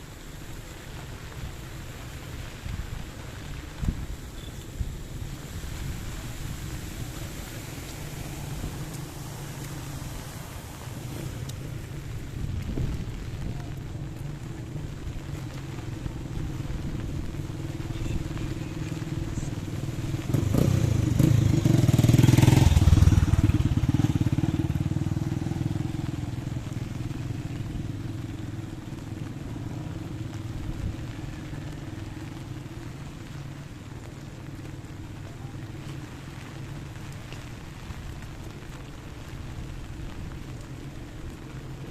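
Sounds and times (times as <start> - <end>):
traffic engine hum: 0.0 - 41.9
vehicle passing by: 5.6 - 11.4, 18.3 - 28.3.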